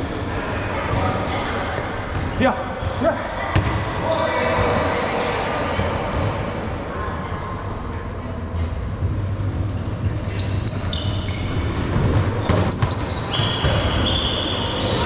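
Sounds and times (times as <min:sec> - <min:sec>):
sneakers squeaking: 0:00.8 - 0:06.4, 0:07.2 - 0:07.9, 0:09.4 - 0:15.0
balls bouncing on hard floor: 0:02.1 - 0:03.8, 0:11.5 - 0:14.2.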